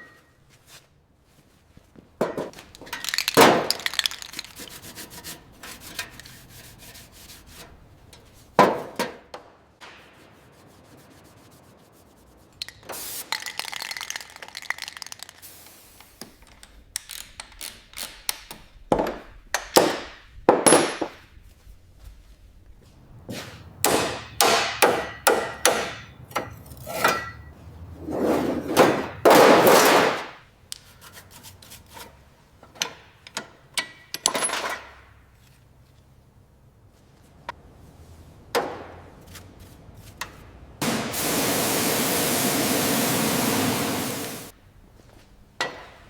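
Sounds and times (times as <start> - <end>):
tool scraping: 3.9 - 8.6, 22.9 - 32.4
tool knocks: 23.2 - 27.6.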